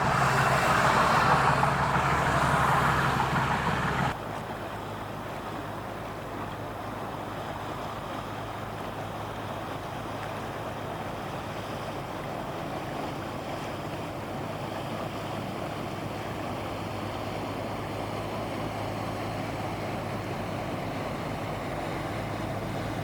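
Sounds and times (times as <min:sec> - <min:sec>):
water washing: 0:00.0 - 0:04.2
boat engine humming: 0:00.0 - 0:23.0.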